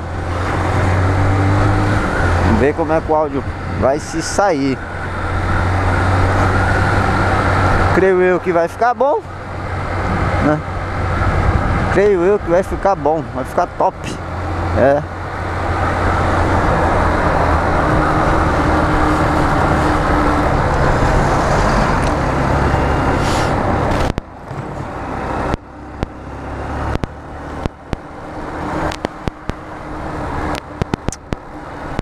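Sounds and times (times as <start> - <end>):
motorcycle engine: 0.0 - 32.0
wind noise: 9.4 - 12.8, 14.0 - 25.6
sharp crackling clicks: 26.9 - 28.1, 28.7 - 29.6, 30.5 - 32.0.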